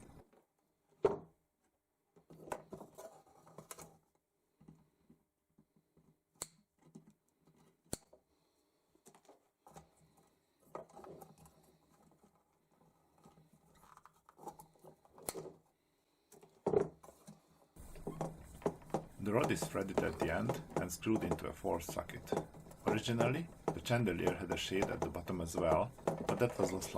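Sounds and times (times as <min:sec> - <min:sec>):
metal parts clicking and knocking: 0:17.8 - 0:26.9.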